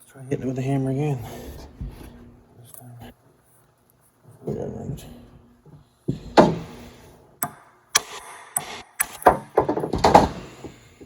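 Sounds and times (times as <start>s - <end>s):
hammer striking metal: 7.4s - 10.4s.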